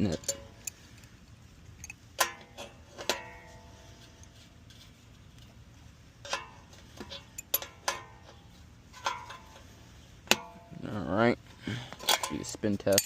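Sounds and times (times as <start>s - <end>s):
tool clinking on metal: 0.0s - 1.0s, 1.8s - 3.6s, 6.2s - 9.6s, 11.9s - 13.0s.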